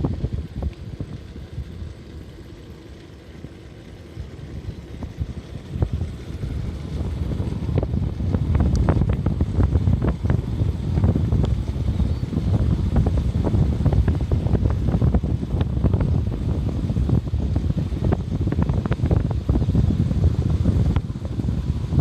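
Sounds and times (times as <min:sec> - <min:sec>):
vehicle driving on road: 0:00.0 - 0:22.0
wind buffeting microphone: 0:00.0 - 0:22.0.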